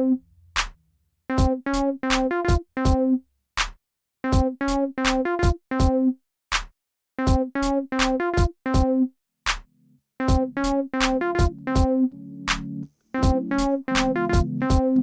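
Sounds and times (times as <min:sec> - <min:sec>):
drum machine kicks: 0:00.0 - 0:03.0, 0:03.6 - 0:06.0, 0:06.6 - 0:08.9, 0:09.5 - 0:09.7, 0:10.3 - 0:11.9, 0:12.5 - 0:15.0
synth keyboard notes: 0:10.2 - 0:15.0.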